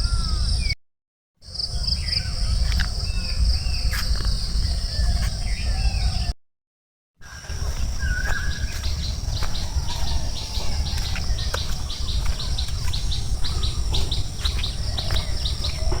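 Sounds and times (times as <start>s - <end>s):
birds chirping: 1.4s - 6.4s, 7.2s - 16.0s
high insect tone: 7.2s - 16.0s
low rumble: 7.2s - 16.0s
lower bird call: 7.2s - 16.0s.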